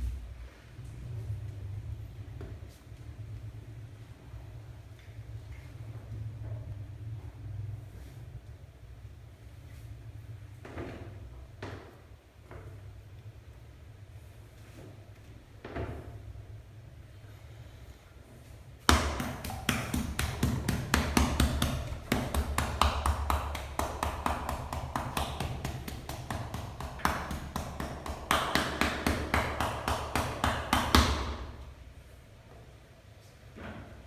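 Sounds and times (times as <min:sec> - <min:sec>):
hands striking body rapidly: 0:18.9 - 0:31.8.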